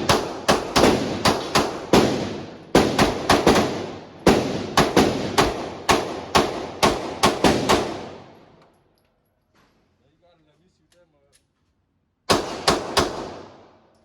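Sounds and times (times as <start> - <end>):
rapid gunfire with echo: 0.0 - 8.5, 12.3 - 13.8.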